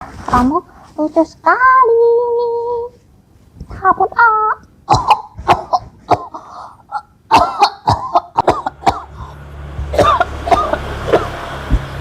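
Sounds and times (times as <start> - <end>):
child coughing: 4.9 - 11.4.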